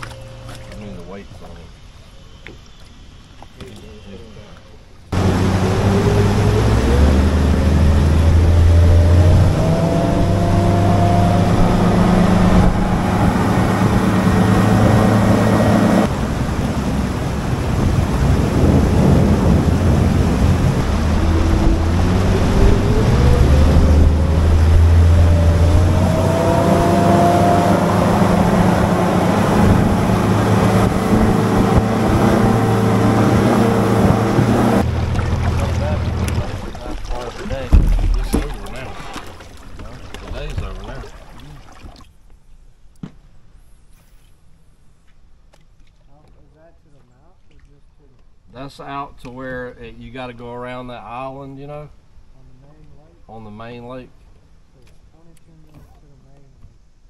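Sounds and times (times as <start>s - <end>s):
outboard motor running: 0.0s - 1.5s, 5.1s - 42.1s
wind and water rushing: 0.0s - 42.2s.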